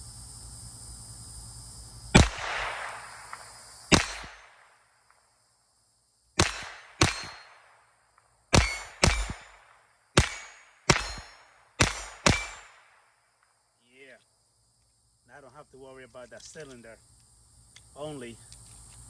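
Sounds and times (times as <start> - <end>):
pistol shots: 2.2 - 4.8, 6.4 - 7.9, 8.5 - 13.1
short metallic ring: 6.4 - 7.7, 8.6 - 9.6, 10.2 - 12.8.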